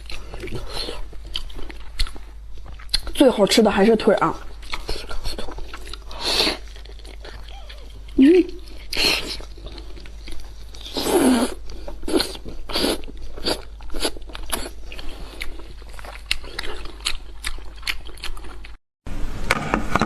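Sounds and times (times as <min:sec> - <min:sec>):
biting and chewing: 0:00.0 - 0:03.2, 0:04.4 - 0:18.8.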